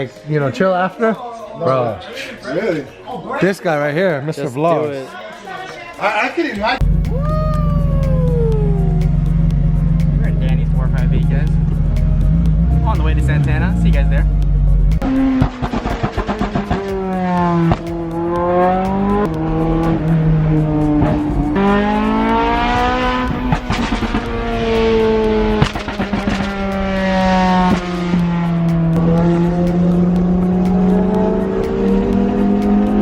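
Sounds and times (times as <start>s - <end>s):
sports car engine accelerating: 6.8s - 33.0s.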